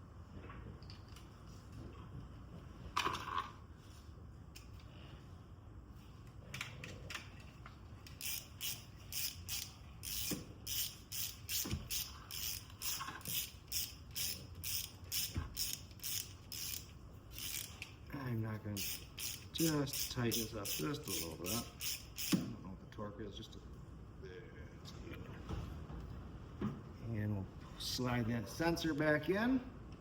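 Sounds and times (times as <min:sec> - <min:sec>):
ratchet wrench clicking: 0:08.0 - 0:18.0, 0:18.7 - 0:22.5.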